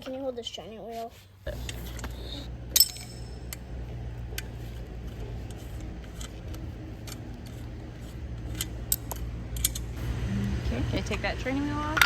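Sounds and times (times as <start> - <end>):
steady low rumble: 1.5 - 12.0
metallic clicks of tools: 2.7 - 3.6, 8.4 - 10.0.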